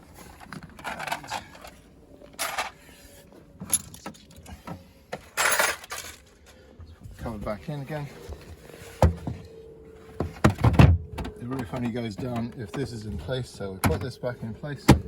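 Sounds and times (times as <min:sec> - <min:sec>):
plastic parts clattering: 0:00.2 - 0:02.8, 0:03.6 - 0:06.6.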